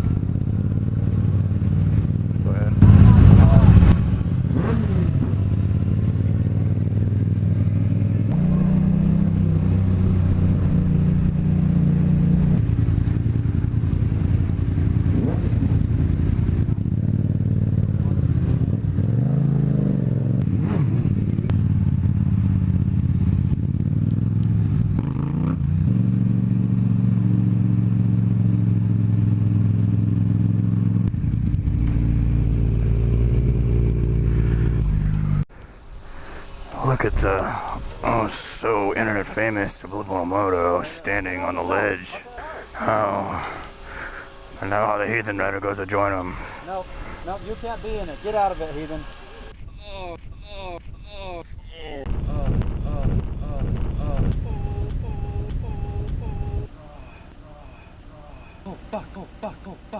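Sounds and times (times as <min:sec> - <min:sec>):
motorcycle engine running: 0:00.0 - 0:35.5, 0:36.4 - 0:59.9
wind noise: 0:49.5 - 0:58.0.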